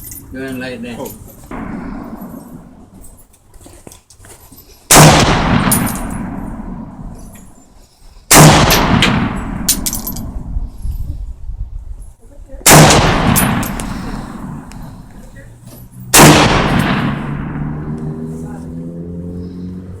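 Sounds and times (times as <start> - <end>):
light metallic clinks: 0.0 - 1.5, 9.7 - 10.4
rifle shots echoing: 1.5 - 3.0, 4.9 - 7.3, 8.3 - 10.5, 12.6 - 15.1, 16.1 - 18.0
faint gunshot: 4.9 - 6.7, 8.3 - 9.6, 12.7 - 13.8, 16.2 - 17.9.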